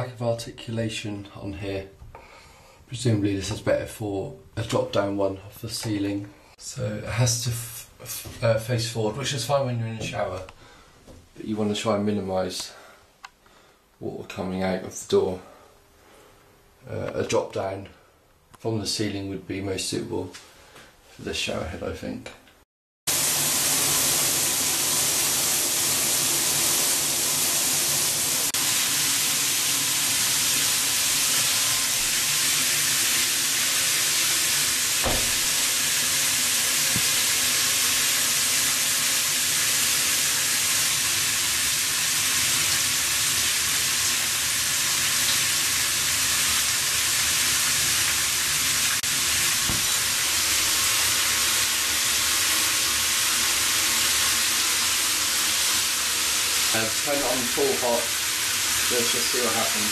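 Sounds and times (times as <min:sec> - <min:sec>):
water spraying from shower head: 0:23.1 - 0:59.9.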